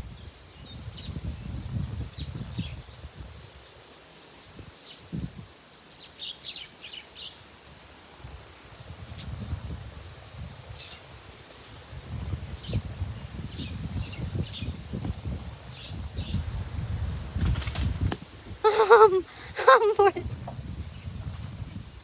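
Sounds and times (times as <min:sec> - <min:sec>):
wind buffeting microphone: 0:00.0 - 0:03.6, 0:08.2 - 0:22.0
small birds chirping: 0:12.5 - 0:16.6, 0:18.5 - 0:21.3.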